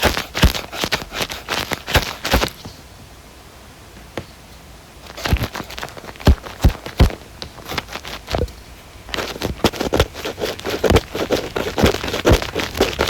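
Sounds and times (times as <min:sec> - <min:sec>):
ear pick scraping microphone: 0:05.1 - 0:13.0.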